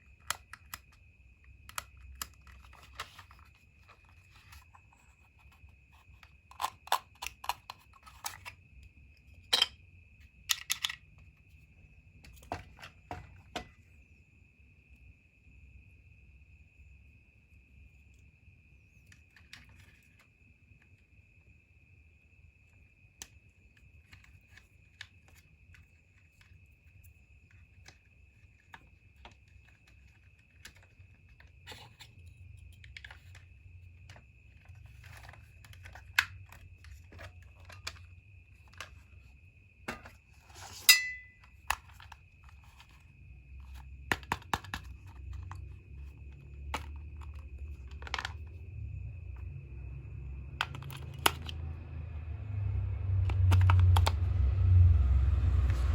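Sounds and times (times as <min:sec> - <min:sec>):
plastic toy parts clicking: 0:06.5 - 0:08.5, 0:10.5 - 0:11.0, 0:53.3 - 0:54.2
low rumble: 0:51.8 - 0:55.9.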